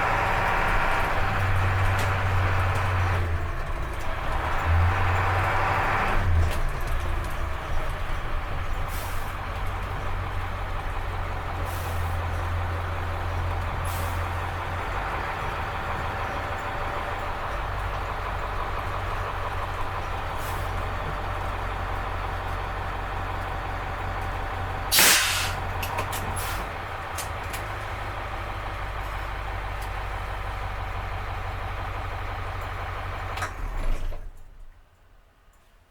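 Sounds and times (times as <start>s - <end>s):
diesel bus engine running: 0.0s - 35.8s
air brakes hissing: 8.8s - 9.4s, 11.6s - 12.4s, 13.8s - 14.4s, 20.4s - 20.9s, 24.9s - 26.7s.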